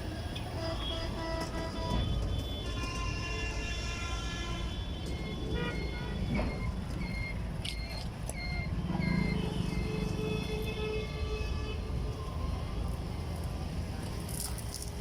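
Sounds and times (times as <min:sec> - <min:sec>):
road traffic: 0:00.0 - 0:15.0
vehicle horns: 0:00.4 - 0:06.6, 0:09.1 - 0:12.0.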